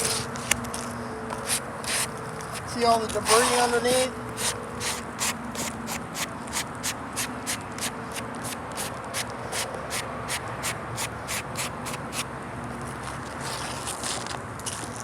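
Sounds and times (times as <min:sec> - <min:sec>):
brush sweeping roof decking: 0:01.3 - 0:12.3.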